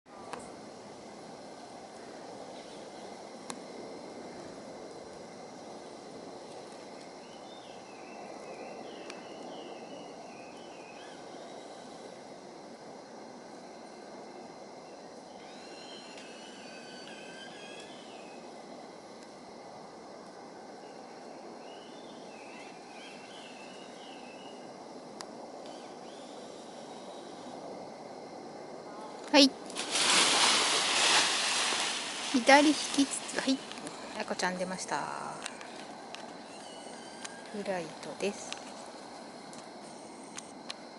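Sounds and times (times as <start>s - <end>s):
outdoor background noise: 0.1s - 40.9s.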